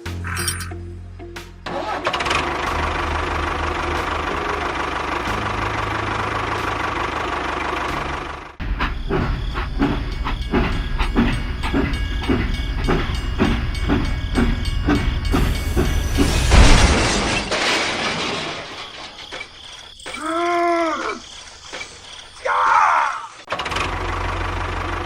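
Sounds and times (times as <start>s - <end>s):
train clickety-clack: 3.9s - 18.3s.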